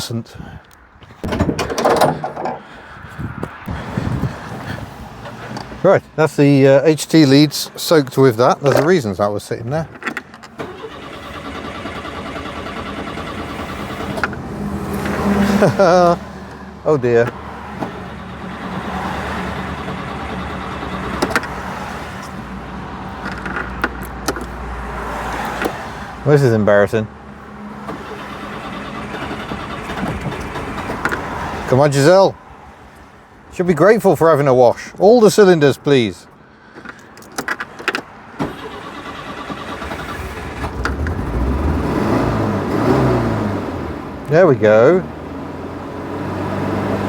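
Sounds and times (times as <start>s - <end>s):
car engine starting and rumbling: 0.0s - 33.2s, 34.8s - 47.0s
engine idling roughly: 18.0s - 21.4s.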